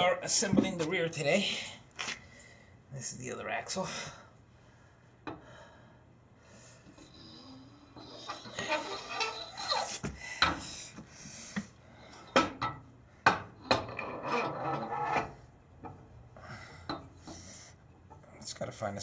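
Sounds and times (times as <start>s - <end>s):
metal scraping along a tube: 7.0s - 10.1s, 12.2s - 16.0s.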